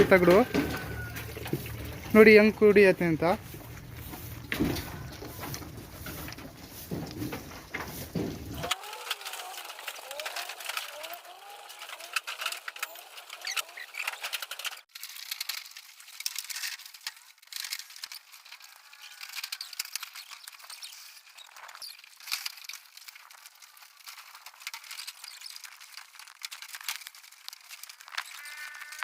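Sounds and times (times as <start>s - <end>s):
sheep drinking water: 0.2s - 2.3s.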